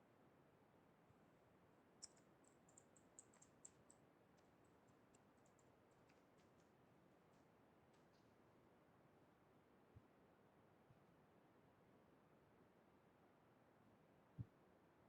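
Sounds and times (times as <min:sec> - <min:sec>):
computer clicks: 0:02.0 - 0:04.0.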